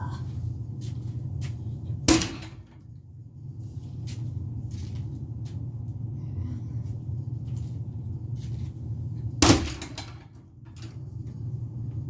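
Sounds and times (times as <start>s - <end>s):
steady low hum: 0.0s - 12.0s
crowbar striking metal fan: 2.1s - 2.6s, 9.4s - 10.2s.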